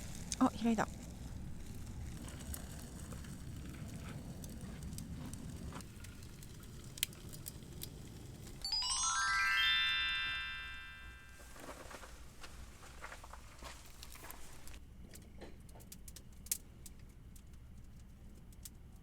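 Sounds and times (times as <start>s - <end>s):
rising chime glissando: 8.6s - 11.4s.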